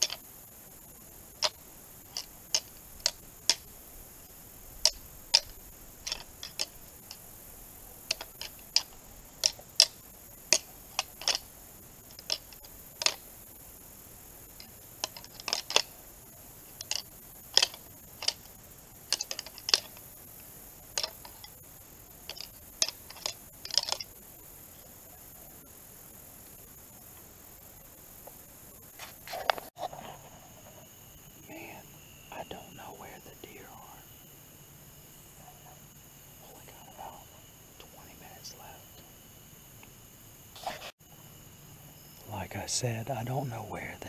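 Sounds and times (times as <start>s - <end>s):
antlers clicking together: 0.0s - 0.2s, 1.4s - 3.7s, 4.8s - 7.2s, 8.0s - 11.5s, 12.1s - 13.3s, 14.6s - 16.0s, 16.8s - 20.0s, 21.0s - 21.6s, 22.2s - 24.2s.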